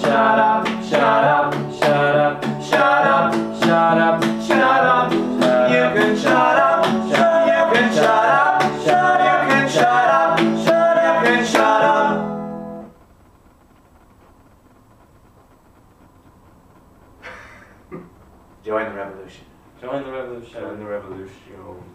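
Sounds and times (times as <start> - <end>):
acoustic guitar strumming: 0.0 - 13.0
faint hiss: 0.0 - 21.9.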